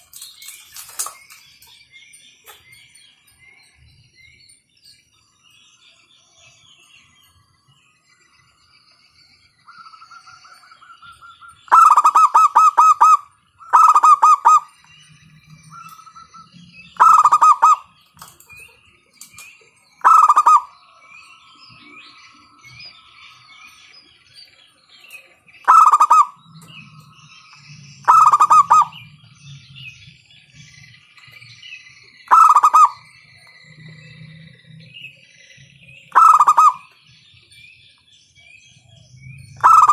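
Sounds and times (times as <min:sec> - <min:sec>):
faint chirping: 0:00.0 - 0:39.9
dove cooing: 0:11.7 - 0:14.7, 0:17.0 - 0:17.9, 0:20.0 - 0:20.7, 0:25.6 - 0:26.4, 0:28.0 - 0:29.0, 0:32.3 - 0:33.0, 0:36.1 - 0:36.9, 0:39.6 - 0:39.9.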